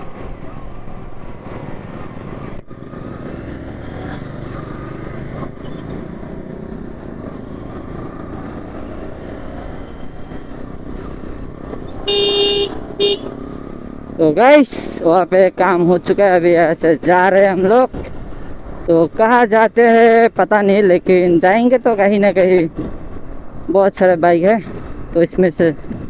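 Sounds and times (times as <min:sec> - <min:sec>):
motorcycle engines running: 0:00.0 - 0:19.9
road noise: 0:00.0 - 0:26.0
vehicle horn: 0:12.0 - 0:13.4.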